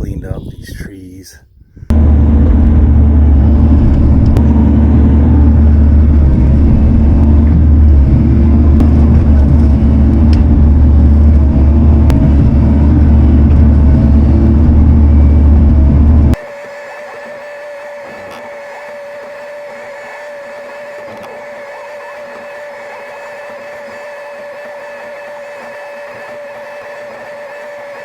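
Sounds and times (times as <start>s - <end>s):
diesel engine droning: 1.9s - 16.4s.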